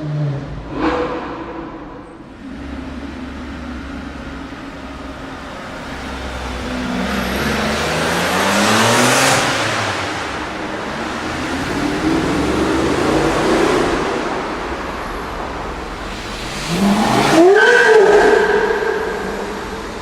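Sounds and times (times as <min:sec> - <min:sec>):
car engine accelerating past: 0:05.7 - 0:15.0.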